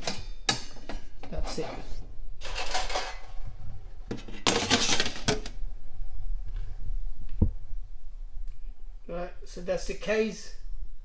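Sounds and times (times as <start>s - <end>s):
metal cage clattering: 2.4s - 3.4s, 4.4s - 5.5s.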